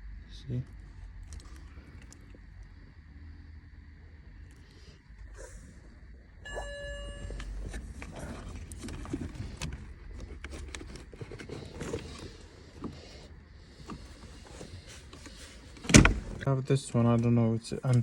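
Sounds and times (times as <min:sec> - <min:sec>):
brief electronic tone: 0:06.4 - 0:07.9.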